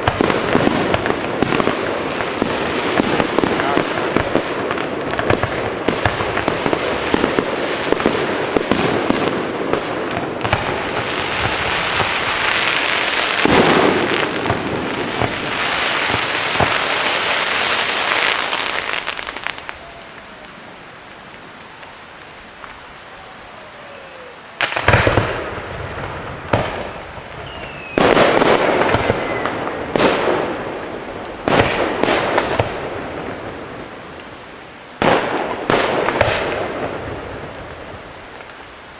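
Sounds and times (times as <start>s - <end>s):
fireworks crackling and banging: 0.0s - 38.9s
loud firework bursts: 0.0s - 38.9s
faint falling whistles: 26.8s - 28.2s, 29.0s - 29.8s.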